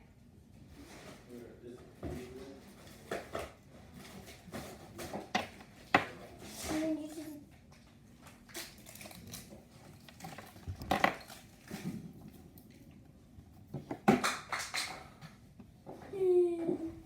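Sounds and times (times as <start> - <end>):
packaging clicks and rustles: 8.5 - 11.8.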